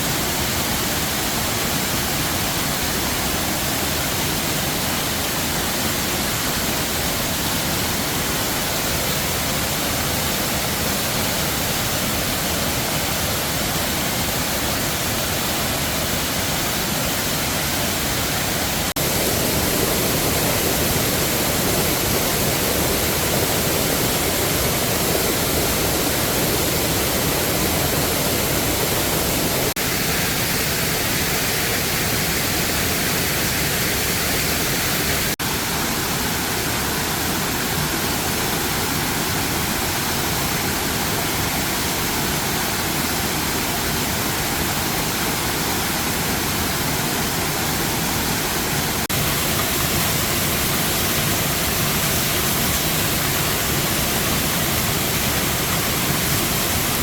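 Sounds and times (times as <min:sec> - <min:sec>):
waterfall roaring: 0:00.0 - 0:57.0.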